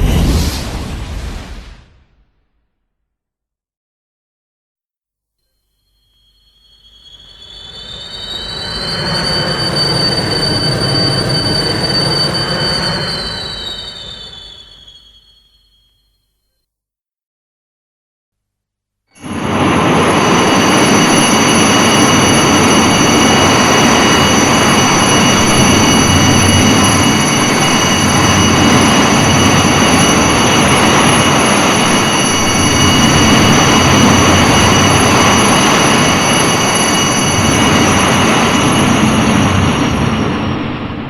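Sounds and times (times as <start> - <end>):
loud rushing roar: 0.0 - 2.3, 7.5 - 14.6, 19.2 - 41.0
high whining tones: 5.8 - 16.1, 19.2 - 41.0.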